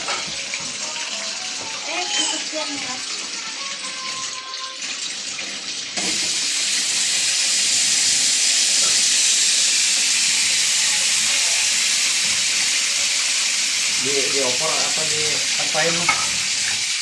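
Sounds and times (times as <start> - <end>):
water running from a tap: 0.0 - 17.0.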